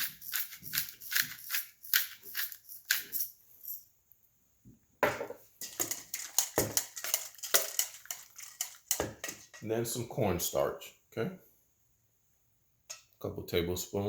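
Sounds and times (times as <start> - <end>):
pepper grinder crunching: 0.0 - 3.3, 5.6 - 9.6.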